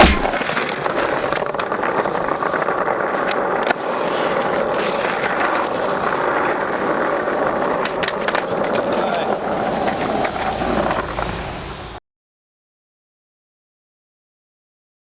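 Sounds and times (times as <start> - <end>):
skateboard wheels rolling on pavement: 0.0 - 12.0
skateboard clicks and knocks: 0.1 - 12.0.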